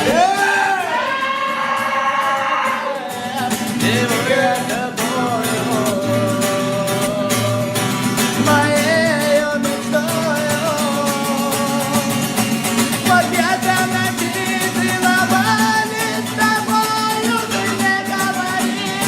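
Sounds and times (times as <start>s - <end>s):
guitar: 0.0s - 19.0s
person singing with vibrato: 0.0s - 19.0s.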